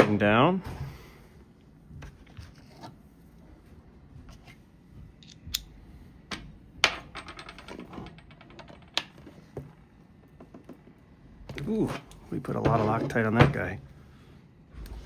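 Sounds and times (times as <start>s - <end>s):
metal clicks of tools: 5.2s - 5.7s.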